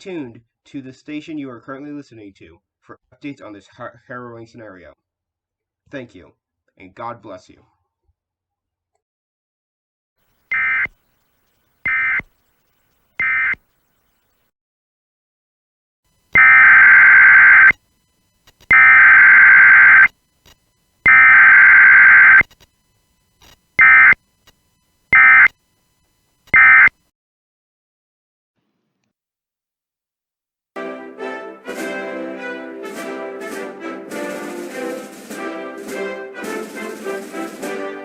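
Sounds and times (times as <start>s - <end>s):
electronic buzzer beeps: 10.5s - 11.0s, 11.8s - 12.4s, 13.2s - 14.4s, 16.4s - 17.8s, 18.6s - 20.1s, 21.0s - 22.6s, 23.4s - 25.6s, 26.4s - 27.0s.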